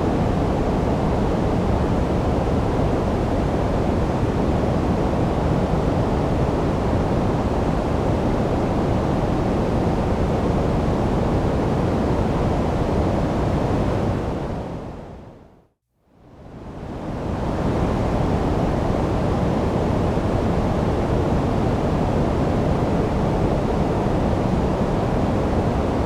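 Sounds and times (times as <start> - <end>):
white noise hiss: 16.3 - 26.0.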